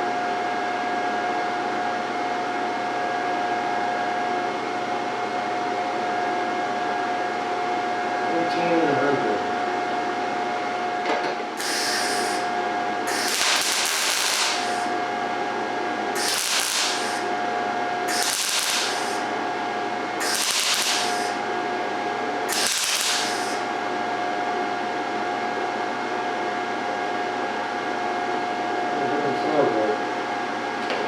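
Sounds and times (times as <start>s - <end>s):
welding arc crackling: 11.6s - 21.6s, 22.4s - 23.8s
steady welder hum: 11.6s - 24.2s.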